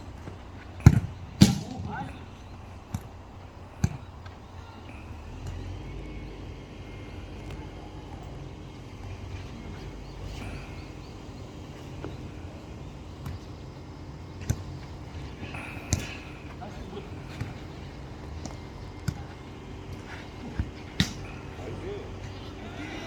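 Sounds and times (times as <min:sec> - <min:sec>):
low outdoor rumble: 0:00.0 - 0:23.0
football kick thud: 0:00.8 - 0:02.1.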